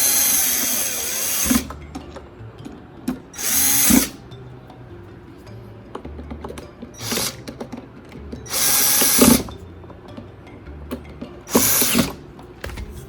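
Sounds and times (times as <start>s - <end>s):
power drill driving screws: 0.0s - 1.7s, 3.4s - 4.2s, 7.0s - 7.4s, 8.5s - 9.5s, 11.5s - 12.2s.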